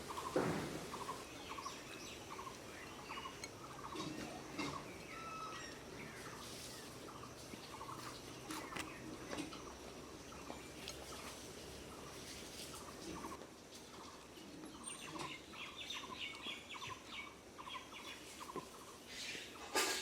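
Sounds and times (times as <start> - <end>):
higher bird chirps: 0.1 - 9.0.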